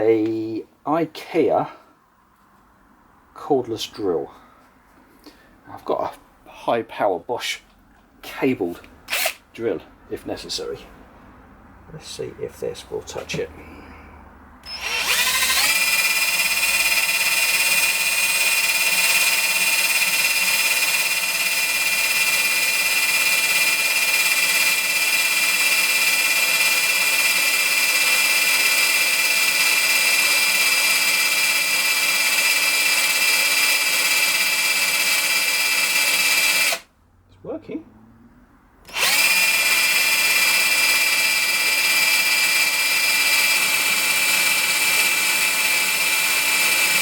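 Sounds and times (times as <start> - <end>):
cordless drill whining: 9.1 - 9.4, 14.6 - 36.8, 38.9 - 47.0.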